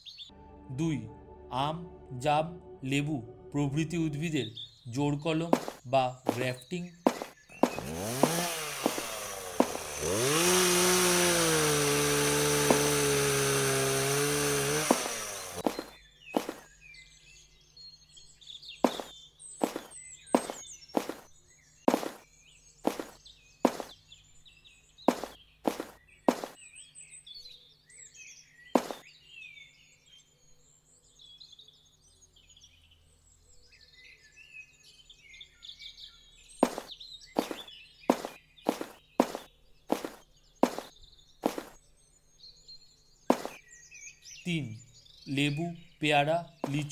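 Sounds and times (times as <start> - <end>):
small birds chirping: 0.0 - 0.3, 2.9 - 13.3, 14.0 - 46.9
sharp knocks: 5.6 - 6.5, 7.1 - 10.4, 12.5 - 13.2, 14.7 - 16.6, 18.8 - 21.2, 22.9 - 23.9, 25.1 - 26.6, 28.8 - 29.0, 36.6 - 40.9, 43.3 - 43.6
small engine revving: 7.1 - 16.6, 18.8 - 21.2, 21.9 - 22.2, 22.9 - 23.9, 25.1 - 26.6, 28.8 - 29.0, 36.6 - 41.7, 43.3 - 43.6.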